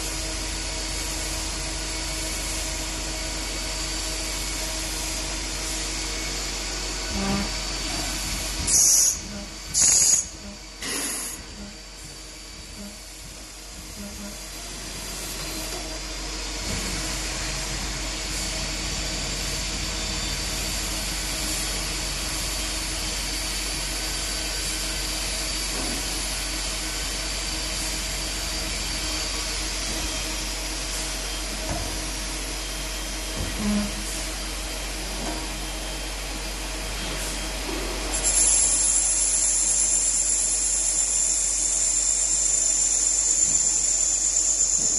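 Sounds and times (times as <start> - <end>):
lathe machine hum and whine: 0.0 - 44.9
loud hissing bursts: 7.1 - 12.0.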